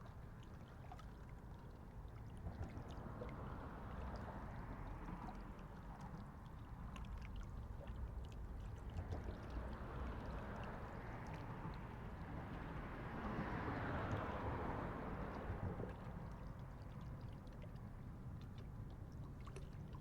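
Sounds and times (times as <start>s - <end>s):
lake water noise: 0.0s - 20.0s.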